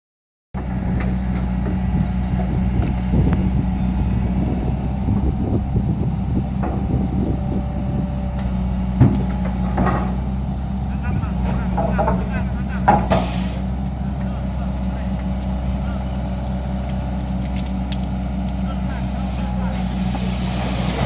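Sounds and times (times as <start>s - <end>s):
diesel engine running: 0.6s - 21.0s
metal knocks and clanks: 8.4s - 10.2s.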